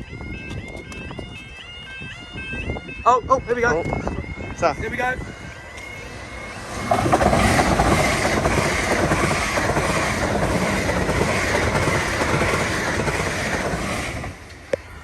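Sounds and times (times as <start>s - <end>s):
train passing on rails: 4.8s - 15.0s.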